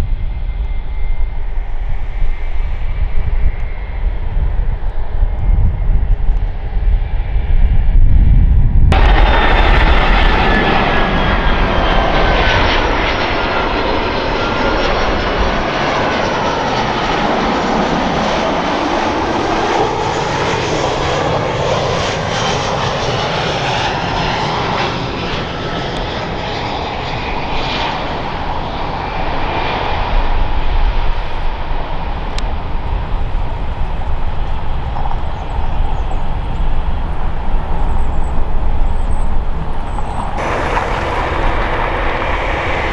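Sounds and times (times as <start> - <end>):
jet airliner passing by: 0.0 - 42.9.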